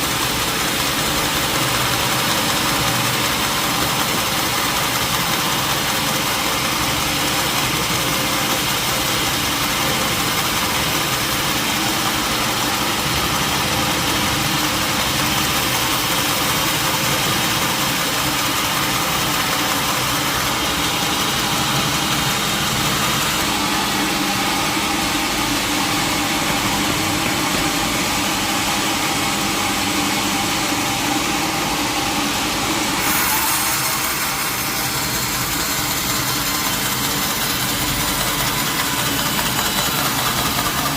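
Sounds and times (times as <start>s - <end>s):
sawmill engine running: 0.0s - 40.9s.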